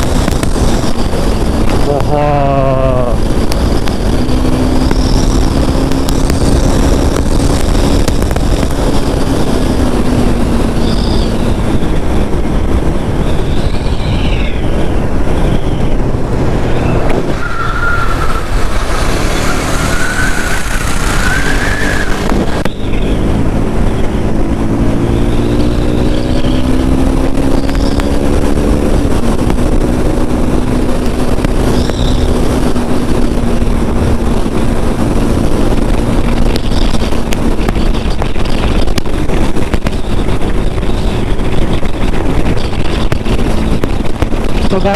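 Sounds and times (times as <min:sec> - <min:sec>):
motorcycle engine at speed: 0:00.0 - 0:44.9
wind rush on microphone: 0:00.0 - 0:44.9.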